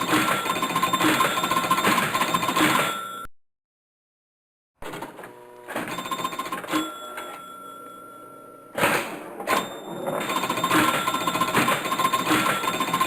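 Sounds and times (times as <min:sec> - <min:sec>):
pinball machine mechanical clatter: 0:00.0 - 0:03.0, 0:04.8 - 0:07.7, 0:08.7 - 0:13.0
held beep: 0:00.0 - 0:03.3, 0:09.5 - 0:13.0.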